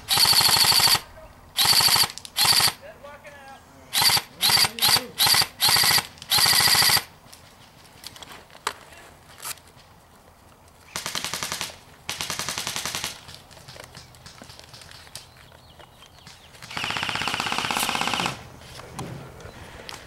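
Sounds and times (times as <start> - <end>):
airsoft guns firing full auto: 0.0 - 2.8, 3.9 - 7.1, 10.9 - 13.3, 16.6 - 18.5.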